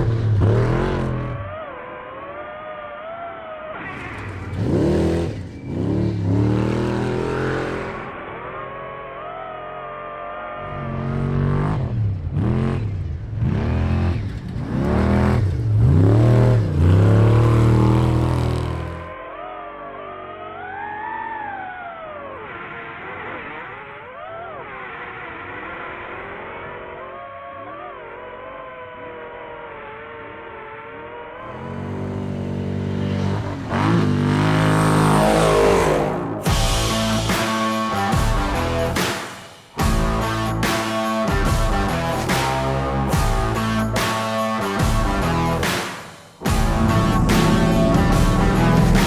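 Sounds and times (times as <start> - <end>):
truck engine revving: 0.0 - 2.1, 3.9 - 8.7, 9.3 - 19.2, 29.8 - 49.0.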